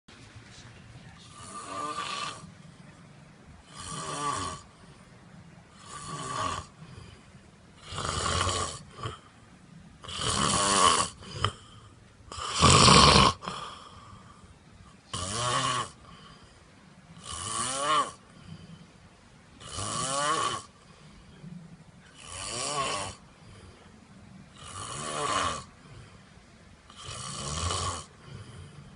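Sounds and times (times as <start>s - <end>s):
man snoring: 1.2s - 2.6s, 3.6s - 4.9s, 5.7s - 9.3s, 10.0s - 14.4s, 15.0s - 16.4s, 17.2s - 18.8s, 19.6s - 20.8s, 22.1s - 23.6s, 24.5s - 26.2s, 26.9s - 28.9s.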